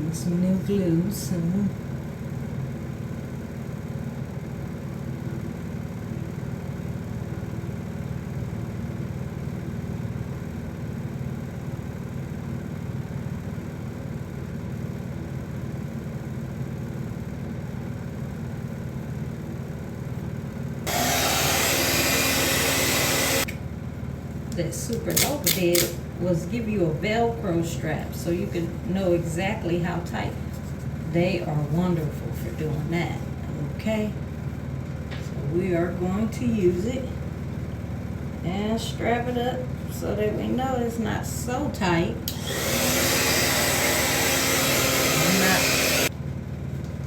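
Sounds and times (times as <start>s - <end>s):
low mechanical hum: 0.0s - 47.0s
loud hiss: 20.9s - 23.5s, 42.4s - 46.1s.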